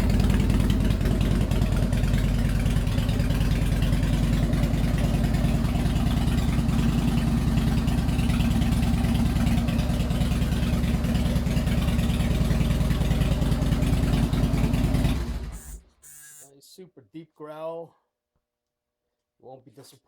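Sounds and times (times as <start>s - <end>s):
motorcycle engine idling: 0.0s - 15.9s.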